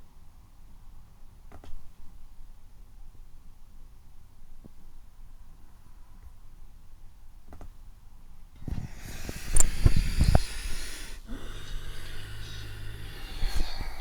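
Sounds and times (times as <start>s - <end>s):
breath blown into microphone: 8.6s - 14.0s
faint low hum: 8.6s - 14.0s.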